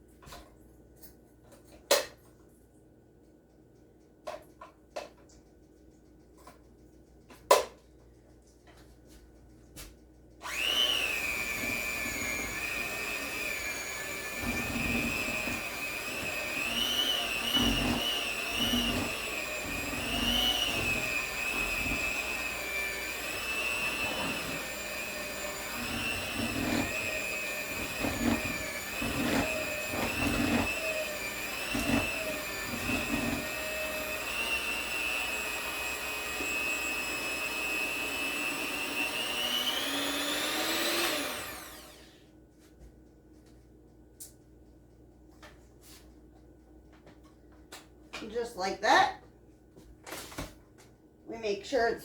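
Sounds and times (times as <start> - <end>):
electric hand mixer whining: 10.4 - 42.2.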